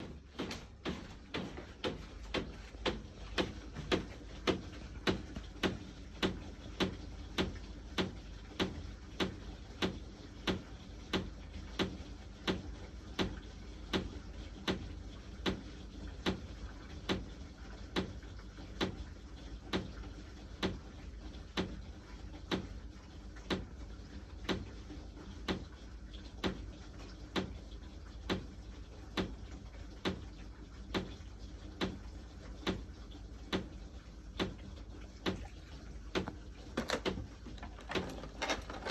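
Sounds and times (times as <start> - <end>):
low steady hum: 31.3 - 38.9.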